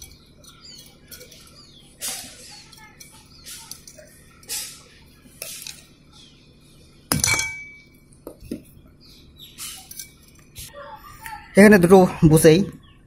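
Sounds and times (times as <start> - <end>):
hammer tapping metal: 7.1 - 7.8
hard hammer strike ringing: 7.1 - 7.9.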